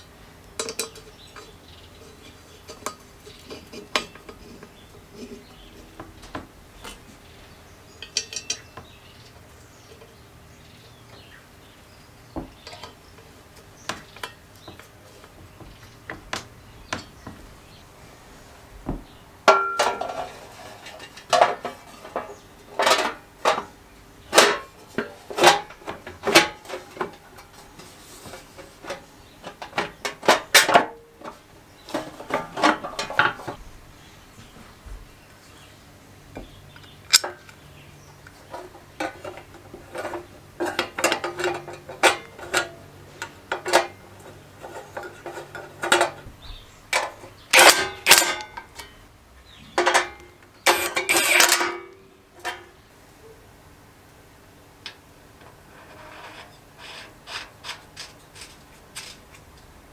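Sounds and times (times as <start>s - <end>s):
metal tools clinking: 8.0s - 9.4s, 19.5s - 33.6s, 38.4s - 46.2s, 46.9s - 49.0s, 49.6s - 52.7s.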